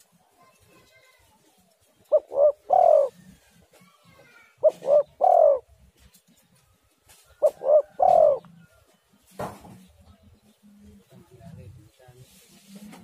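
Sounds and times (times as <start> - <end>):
dove cooing: 2.0 - 3.4, 4.5 - 5.8, 7.4 - 8.7.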